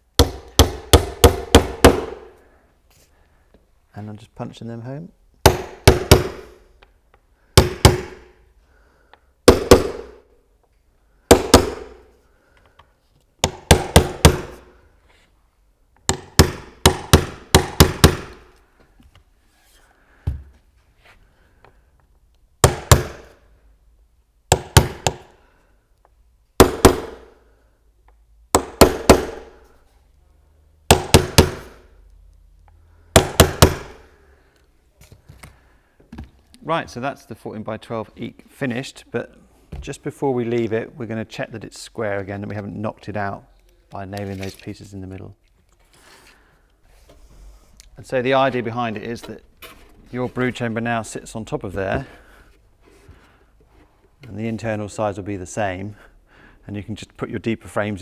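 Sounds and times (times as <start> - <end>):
hammer striking metal punch: 0.2 - 2.3, 5.5 - 6.4, 28.6 - 29.5, 33.2 - 34.0.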